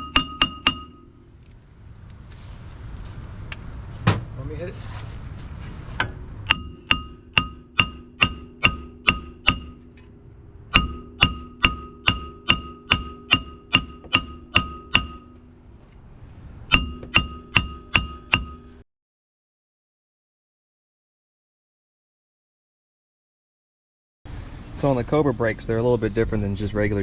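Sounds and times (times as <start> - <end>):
mallet striking metal: 0.0 - 1.3, 6.0 - 15.6, 16.7 - 18.8.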